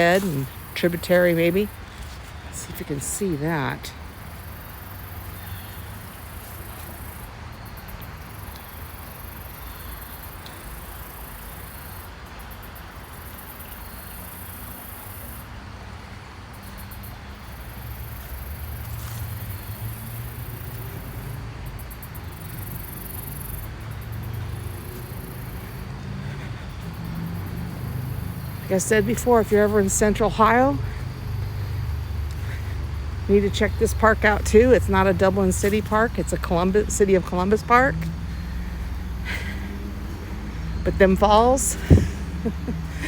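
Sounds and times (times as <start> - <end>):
insects trilling: 0.0 - 15.5, 16.5 - 43.0.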